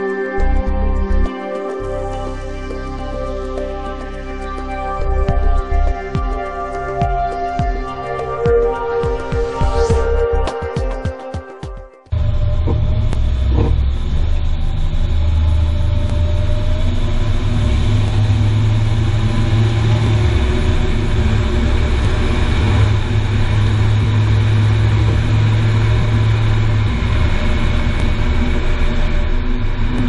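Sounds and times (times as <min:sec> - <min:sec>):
road rumble of moving car: 0:12.2 - 0:30.0.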